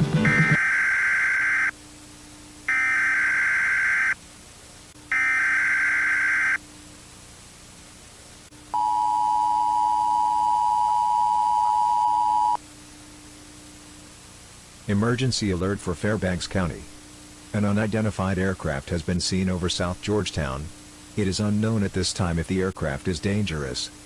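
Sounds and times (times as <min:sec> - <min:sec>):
two-tone attention signal: 0:08.8 - 0:12.6.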